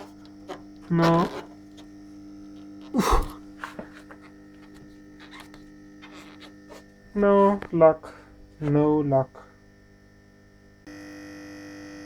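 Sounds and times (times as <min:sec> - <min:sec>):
electrical mains hum: 0:00.0 - 0:12.0
person breathing burst: 0:03.0 - 0:03.8, 0:08.1 - 0:08.4.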